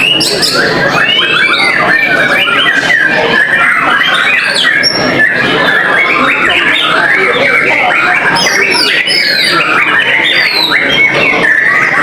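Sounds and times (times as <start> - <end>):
many birds singing: 0.0 - 12.0.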